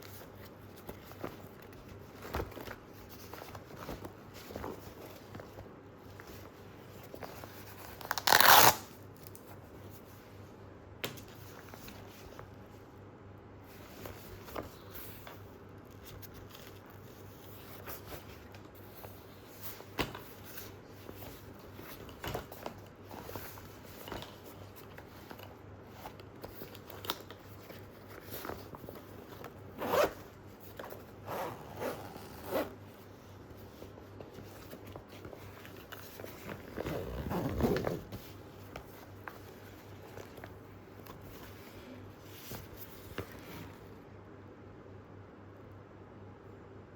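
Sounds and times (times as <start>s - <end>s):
zipper pulled quickly: 8.1s - 8.8s, 29.8s - 30.2s, 31.2s - 32.8s, 36.6s - 38.1s
fabric rustling: 15.9s - 43.9s.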